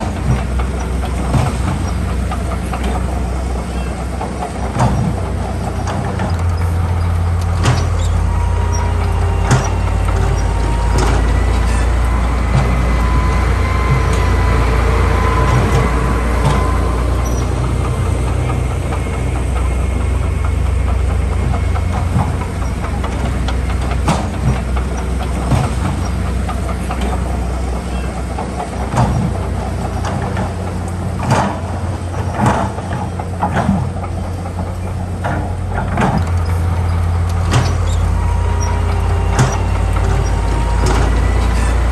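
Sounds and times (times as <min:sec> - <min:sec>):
diesel machinery engine drone: 0:00.0 - 0:41.9.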